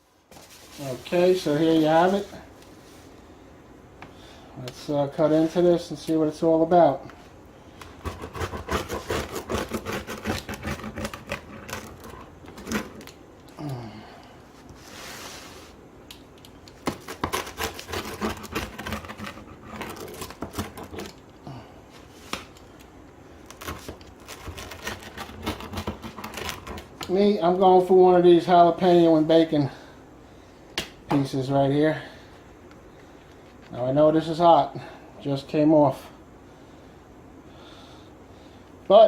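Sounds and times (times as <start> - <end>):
knife crunching through pizza crust: 7.8 - 13.1, 16.7 - 21.2, 23.4 - 27.0.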